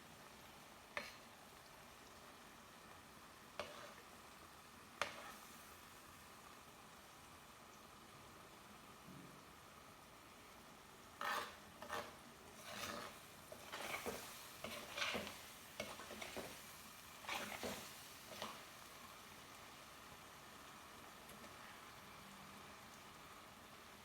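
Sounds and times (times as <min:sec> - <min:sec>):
spoon scraping cooking pan: 0:00.9 - 0:01.2, 0:03.6 - 0:04.1, 0:05.0 - 0:05.6, 0:11.2 - 0:18.9.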